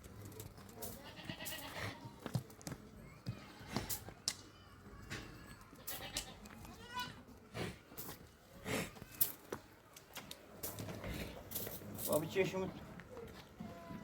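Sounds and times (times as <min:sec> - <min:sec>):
goat bleating: 0:00.9 - 0:02.1, 0:05.7 - 0:07.2.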